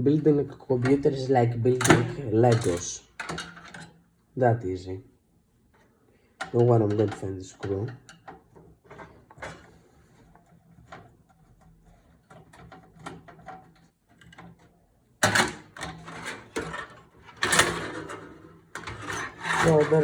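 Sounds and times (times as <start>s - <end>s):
motherboard scraping and rubbing: 16.0s - 20.0s.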